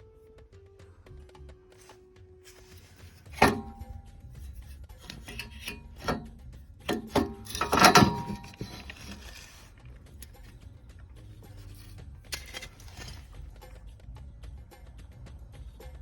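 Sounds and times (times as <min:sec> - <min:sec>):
faint background music: 0:00.0 - 0:16.0
tools scraping and knocking: 0:02.5 - 0:13.9.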